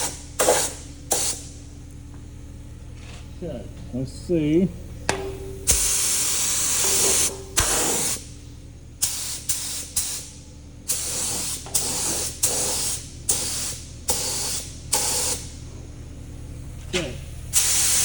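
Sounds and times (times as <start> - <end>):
paint spray gun hissing: 0.0 - 1.4, 5.7 - 8.2, 9.0 - 10.3, 10.9 - 15.4, 17.6 - 18.0.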